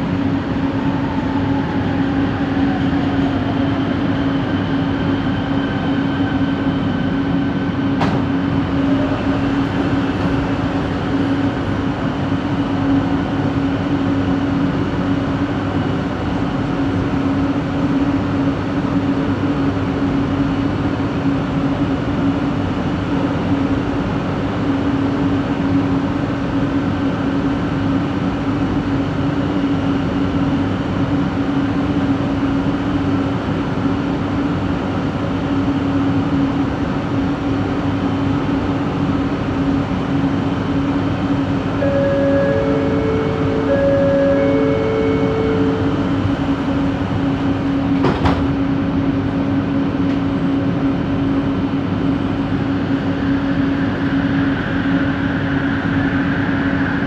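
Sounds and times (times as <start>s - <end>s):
train rolling noise: 0.0s - 57.0s.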